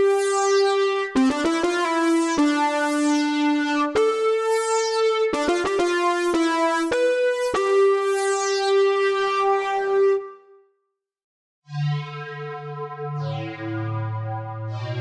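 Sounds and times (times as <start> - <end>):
synth lead notes: 11.7 - 15.0.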